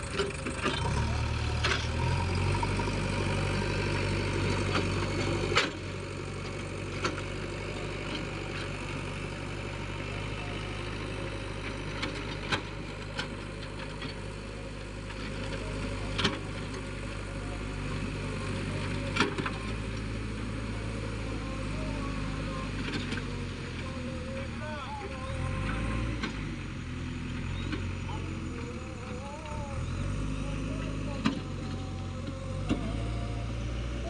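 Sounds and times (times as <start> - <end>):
diesel engine running: 0.0 - 34.0.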